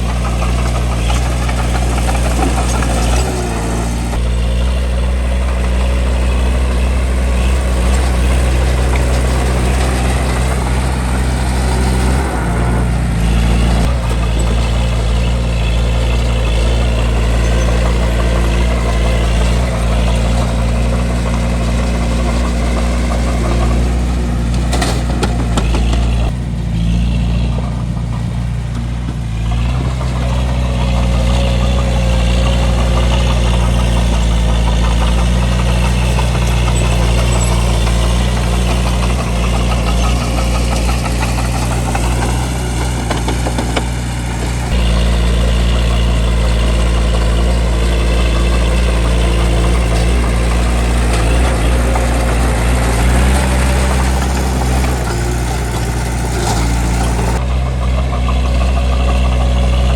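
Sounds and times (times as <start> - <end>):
diesel engine droning: 0.0 - 59.9.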